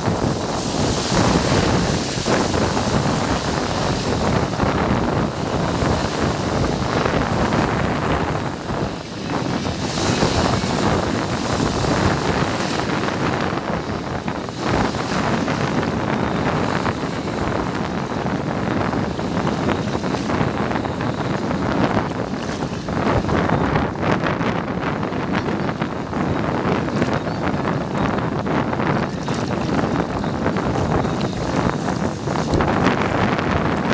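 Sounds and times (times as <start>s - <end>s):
sea waves: 0.0s - 33.9s
wind buffeting microphone: 0.0s - 33.9s.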